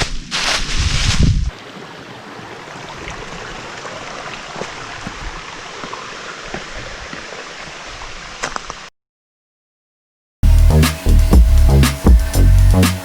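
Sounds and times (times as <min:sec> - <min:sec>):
stream water rushing: 0:01.5 - 0:08.9.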